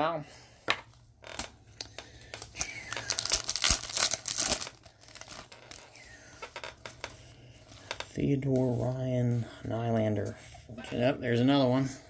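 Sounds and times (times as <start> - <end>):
foil wrapper tearing and crinkling: 2.2 - 6.8.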